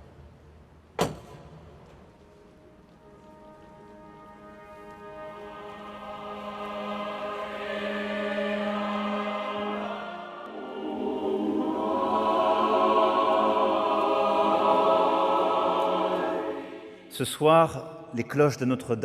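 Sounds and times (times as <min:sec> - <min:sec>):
choir chanting held chords: 0:03.7 - 0:18.2.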